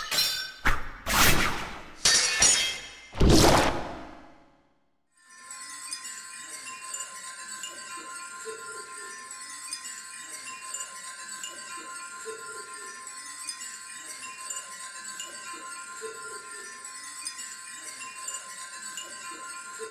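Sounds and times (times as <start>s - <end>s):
wind chimes tinkling: 5.3s - 19.9s.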